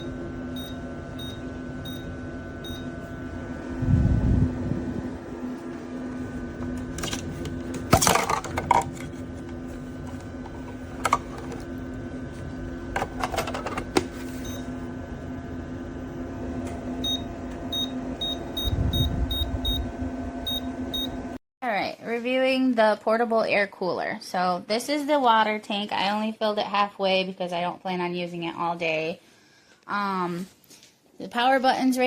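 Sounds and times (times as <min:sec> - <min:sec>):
air cooler humming: 0:00.0 - 0:21.4.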